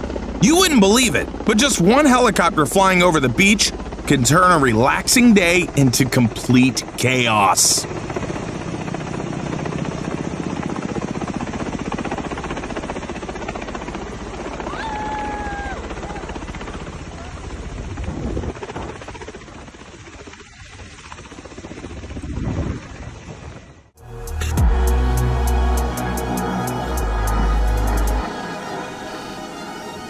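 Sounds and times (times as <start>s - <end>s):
helicopter rotor blades chopping: 0.0s - 30.0s.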